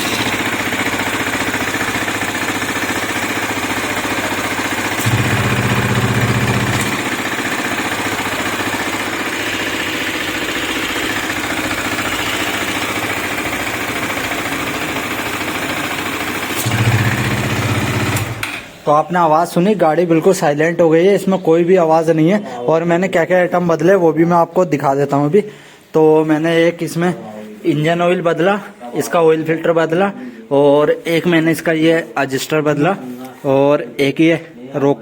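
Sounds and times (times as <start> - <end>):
motorcycle engine idling: 0.0 - 18.4.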